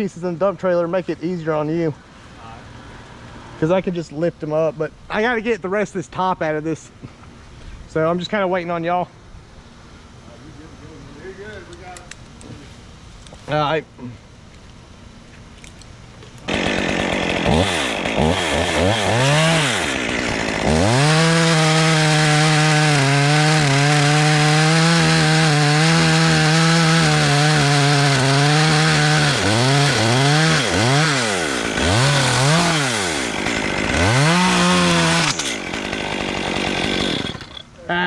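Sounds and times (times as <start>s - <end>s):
chainsaw revving and cutting wood: 16.4s - 37.7s.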